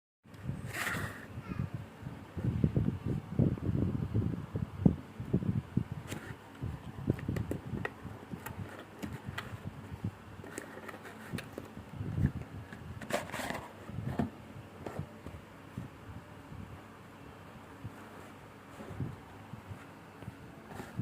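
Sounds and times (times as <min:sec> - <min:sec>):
scraping rustle: 0:10.4 - 0:15.1, 0:20.6 - 0:21.0.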